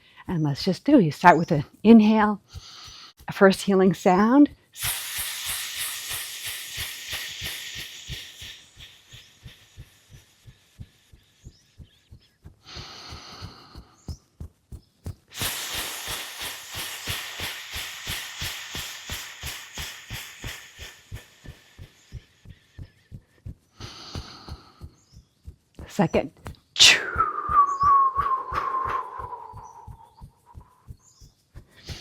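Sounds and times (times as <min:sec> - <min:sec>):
long exhaled hiss: 0:04.8 - 0:11.2, 0:12.6 - 0:14.1, 0:15.3 - 0:25.2, 0:26.8 - 0:27.8.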